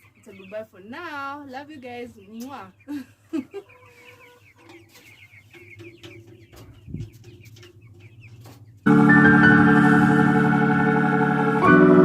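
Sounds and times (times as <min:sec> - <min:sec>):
chickens clucking: 0:00.0 - 0:08.9
music of held chords: 0:08.9 - 0:12.0.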